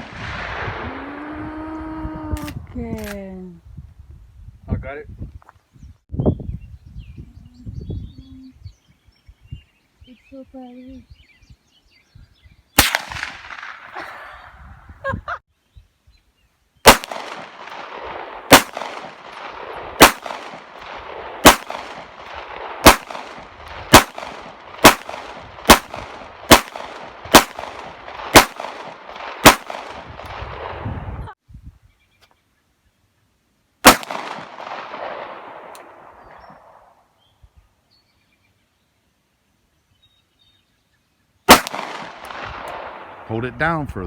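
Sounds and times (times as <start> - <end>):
gunshots: 12.8 - 14.0, 16.9 - 30.8, 33.8 - 36.4, 41.5 - 43.8.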